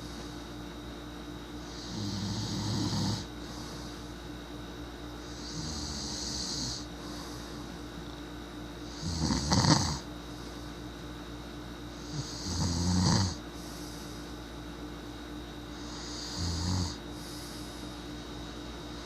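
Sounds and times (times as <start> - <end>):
person snoring: 1.7 - 4.0, 5.2 - 7.7, 8.9 - 10.1, 12.0 - 14.3, 15.7 - 17.8.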